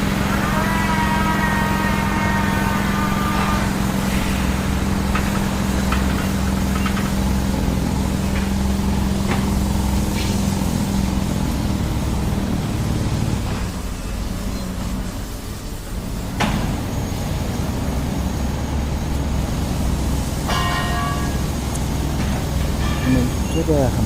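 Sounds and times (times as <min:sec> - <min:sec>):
high whine: 0:00.0 - 0:12.0
large engine idling: 0:00.0 - 0:24.0.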